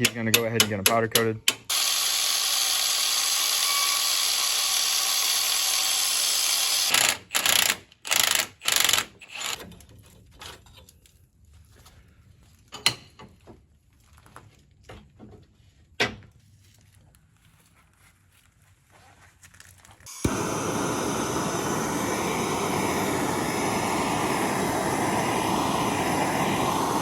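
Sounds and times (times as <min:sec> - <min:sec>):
power tool running: 0:01.7 - 0:09.6, 0:20.1 - 0:27.0.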